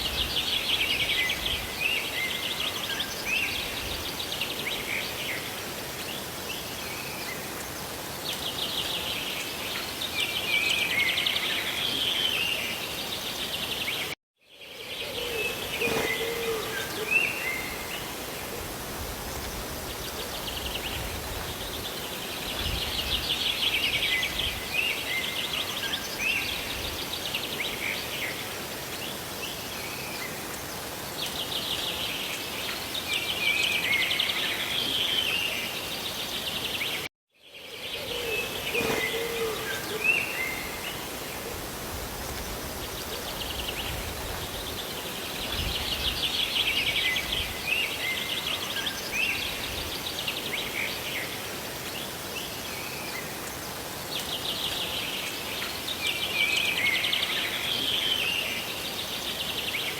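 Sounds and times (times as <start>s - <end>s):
rain and falling water: 0.0s - 14.2s, 15.4s - 37.1s, 38.4s - 59.9s
songbirds trilling: 14.8s - 59.9s.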